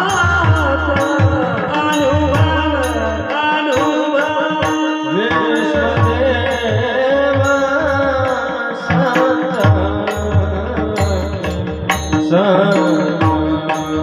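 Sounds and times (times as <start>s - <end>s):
ornamented singing: 0.0s - 14.0s.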